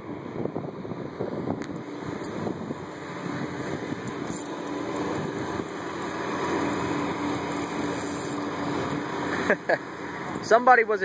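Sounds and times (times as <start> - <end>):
wind noise on microphone: 0.0 - 6.0
engine drone: 0.0 - 11.0.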